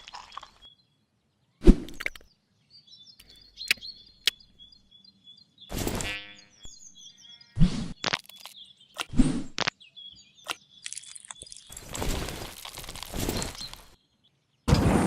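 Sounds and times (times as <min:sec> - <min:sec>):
rough rustling noise: 0:11.6 - 0:14.0.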